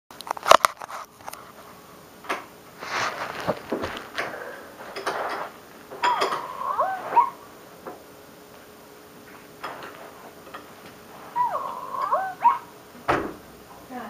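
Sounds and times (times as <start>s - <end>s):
electronic whimpering call: 6.0s - 7.4s, 11.3s - 12.7s.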